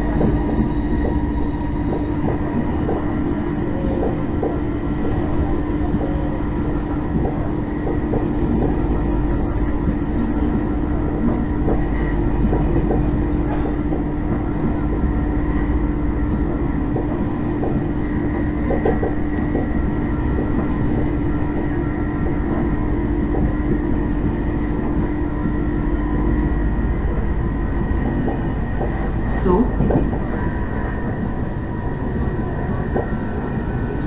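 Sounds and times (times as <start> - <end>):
traction equipment hum: 0.0 - 20.8
train wheels rumbling on track: 0.0 - 34.0.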